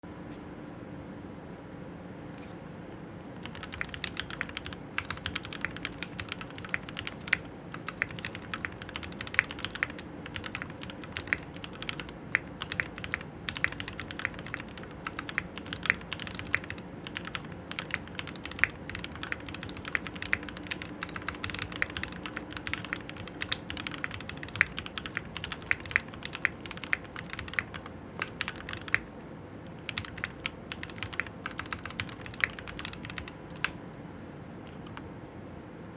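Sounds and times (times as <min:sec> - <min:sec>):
mechanical keyboard typing: 0:03.4 - 0:29.1, 0:29.7 - 0:33.8, 0:34.6 - 0:35.1.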